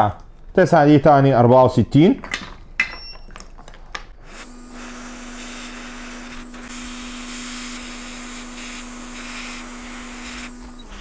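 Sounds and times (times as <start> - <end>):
fan humming: 4.2 - 11.0
hot air station hissing: 4.2 - 11.0.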